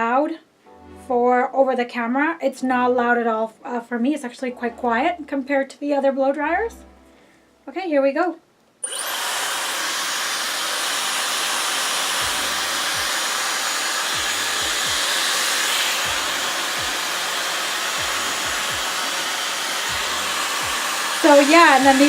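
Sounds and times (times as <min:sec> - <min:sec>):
hair dryer blowing: 0:08.8 - 0:22.0.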